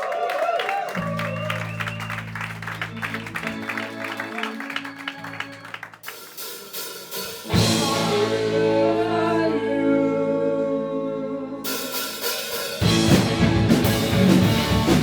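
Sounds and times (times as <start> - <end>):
live rock band playing: 1.0 - 9.2, 11.6 - 15.0.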